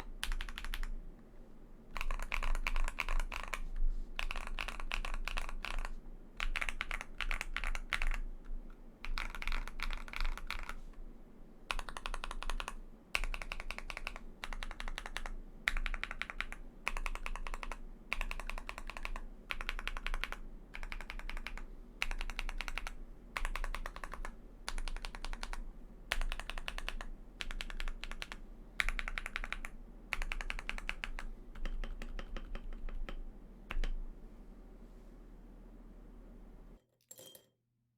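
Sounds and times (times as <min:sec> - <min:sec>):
mechanical keyboard typing: 0:00.0 - 0:00.9, 0:01.9 - 0:03.6, 0:04.2 - 0:10.8, 0:11.7 - 0:34.0.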